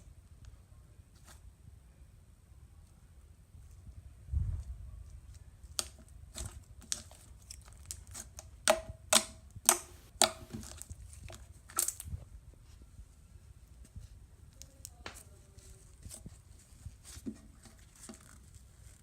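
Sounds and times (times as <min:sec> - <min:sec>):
slime clicking and popping: 0:08.7 - 0:10.8.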